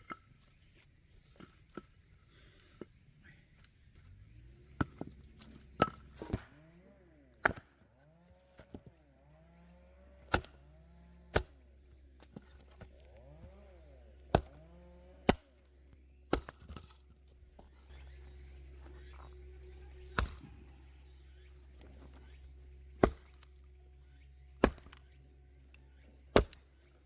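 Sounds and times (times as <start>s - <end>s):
faint low hum: 0.0s - 27.0s
firewood chopping knocks: 7.4s - 7.8s, 10.3s - 10.6s, 14.3s - 14.6s, 16.3s - 17.0s, 20.2s - 20.5s, 23.0s - 23.5s, 24.6s - 25.1s, 26.3s - 26.6s.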